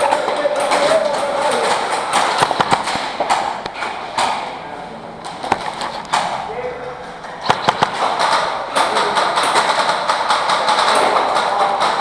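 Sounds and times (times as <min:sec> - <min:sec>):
airsoft gun shots and impacts: 0:02.1 - 0:04.5, 0:07.4 - 0:11.4.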